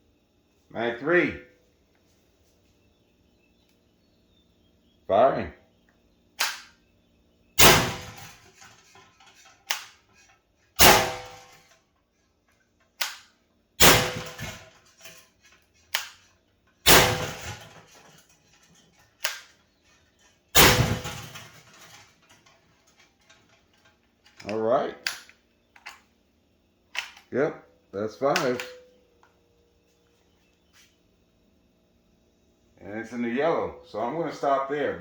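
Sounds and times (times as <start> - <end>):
air pistol shots: 6.4 - 6.8, 7.6 - 9.0, 9.7 - 10.0, 10.8 - 11.7, 13.0 - 15.1, 15.9 - 18.0, 19.2 - 19.5, 20.6 - 22.0, 28.4 - 28.8.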